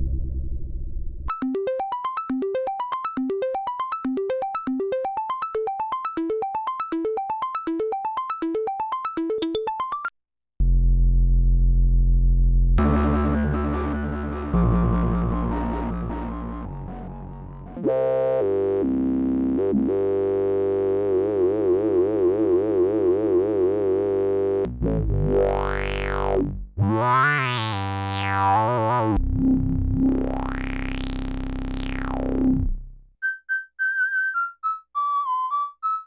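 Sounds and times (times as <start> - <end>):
synthesizer bass notes: 10.6 - 33.1
synthesizer sweeps: 12.8 - 18.1.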